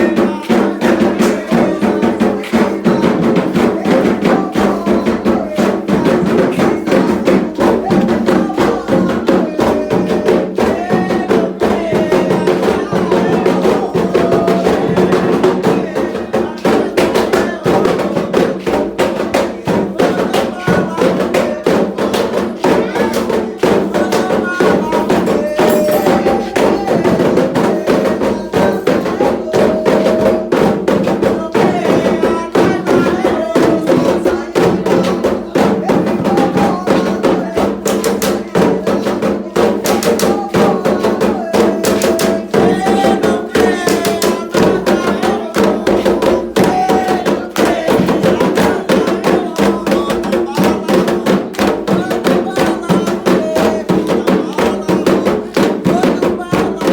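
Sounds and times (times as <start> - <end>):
hand drums playing rhythm: 0.0 - 56.9
voices singing a chant: 0.0 - 56.9.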